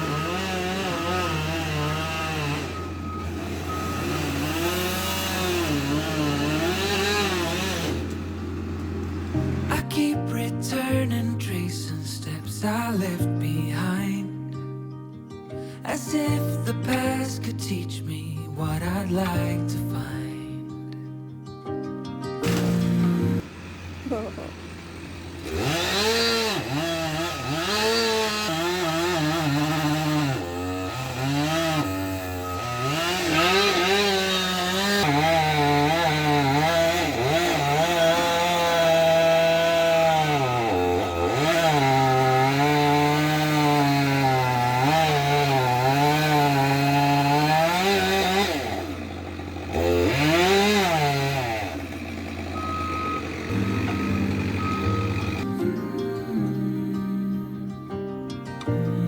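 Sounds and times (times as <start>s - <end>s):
chainsaw cutting wood: 0.0s - 11.3s, 22.4s - 57.0s.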